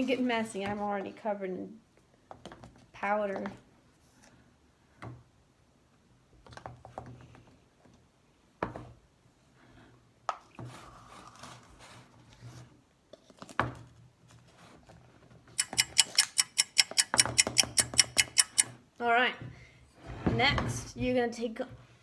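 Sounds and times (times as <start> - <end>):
fast even tapping: 15.6 - 18.7.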